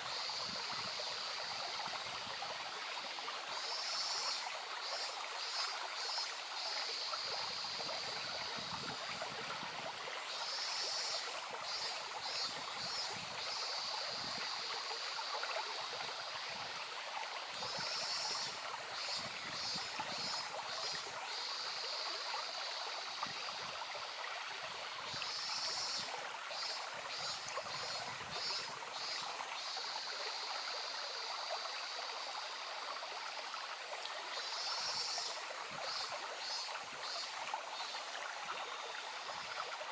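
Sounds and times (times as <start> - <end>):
stream babbling over stones: 0.0 - 11.2.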